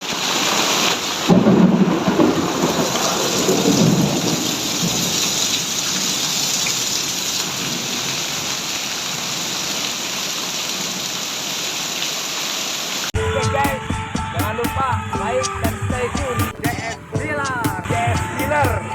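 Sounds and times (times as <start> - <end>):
heavy rain pouring: 0.0 - 13.1
thunder rumbling: 1.3 - 5.4.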